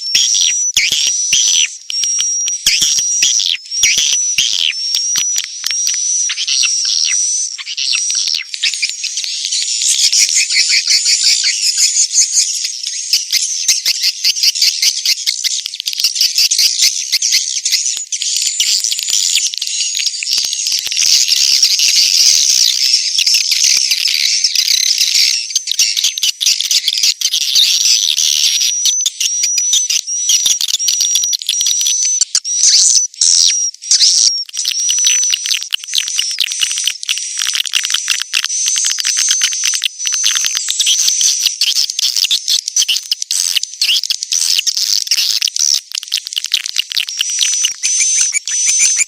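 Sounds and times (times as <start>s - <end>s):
swiftlets twittering: 40.2s - 49.0s.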